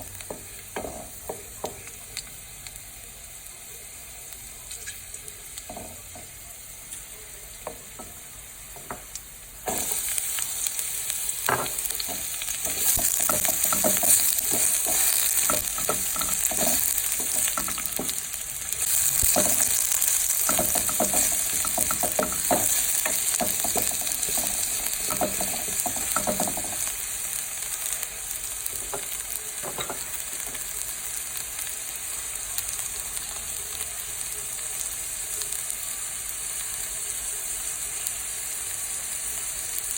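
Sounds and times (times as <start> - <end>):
vegetables sizzling in a pan: 0.0 - 39.9
utensil scraping a pan: 11.5 - 18.2.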